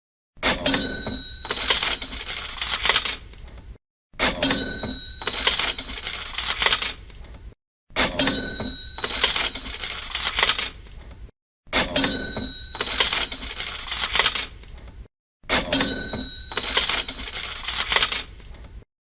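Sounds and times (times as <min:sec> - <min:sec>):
cash register bell ring: 0:00.4 - 0:03.2, 0:04.3 - 0:06.8, 0:08.0 - 0:10.8, 0:11.8 - 0:14.5, 0:15.5 - 0:18.3
coins clattering: 0:01.4 - 0:03.4, 0:05.2 - 0:07.1, 0:08.9 - 0:10.9, 0:12.1 - 0:14.7, 0:15.8 - 0:18.5.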